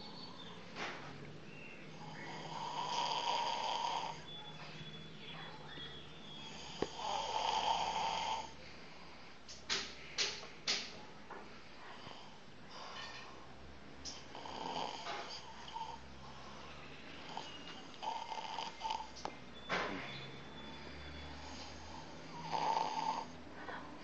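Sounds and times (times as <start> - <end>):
person snoring: 2.0 - 4.2, 6.5 - 8.6, 14.3 - 16.6, 17.3 - 19.1, 21.8 - 23.4.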